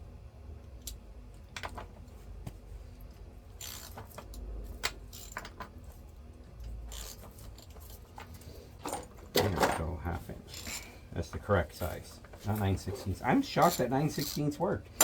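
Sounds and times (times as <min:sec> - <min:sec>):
wrench clicking and rattling: 0:03.5 - 0:05.6, 0:06.9 - 0:08.0, 0:10.5 - 0:10.9, 0:13.5 - 0:15.0.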